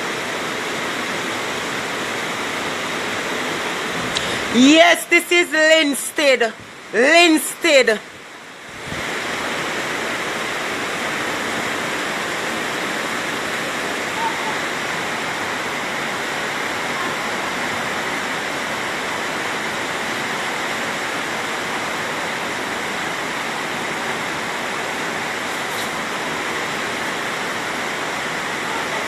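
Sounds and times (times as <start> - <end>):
floodwater rushing: 0.0 - 29.0.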